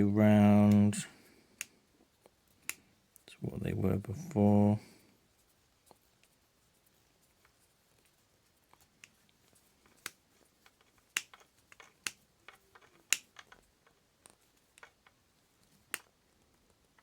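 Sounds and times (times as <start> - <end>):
sharp clicks and light taps: 0.5 - 1.0, 1.6 - 3.3, 8.7 - 17.0.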